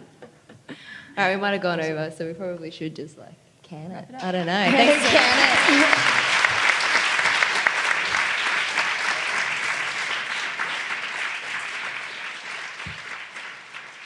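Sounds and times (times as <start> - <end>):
audience applauding: 4.5 - 14.0.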